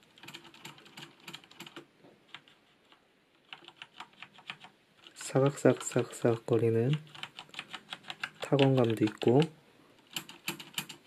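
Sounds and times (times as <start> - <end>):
mechanical keyboard key clacks: 10.1 - 11.0.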